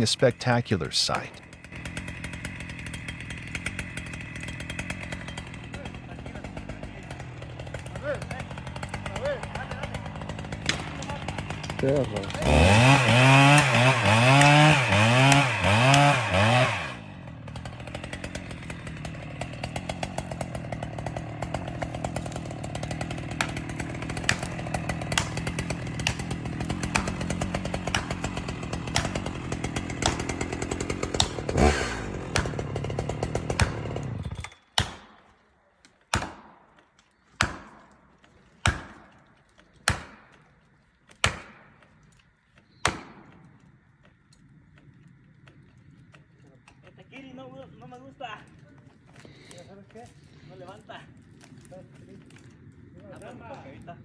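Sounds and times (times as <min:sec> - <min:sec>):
chainsaw revving and cutting: 0:00.0 - 0:35.0, 0:48.9 - 0:54.0.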